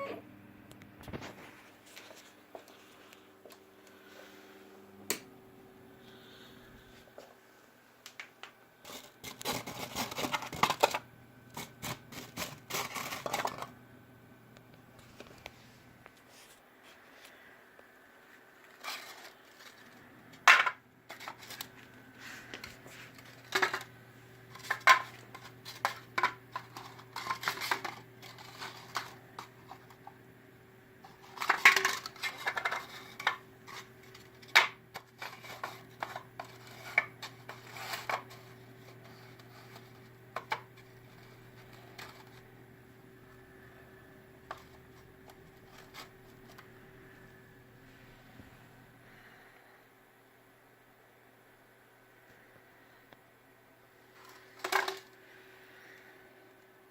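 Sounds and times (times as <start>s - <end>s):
faint low hum: 0.0s - 56.9s
objects clattering on hard surface: 18.8s - 21.7s, 22.5s - 23.9s, 24.5s - 30.1s, 31.1s - 38.4s, 54.2s - 55.2s.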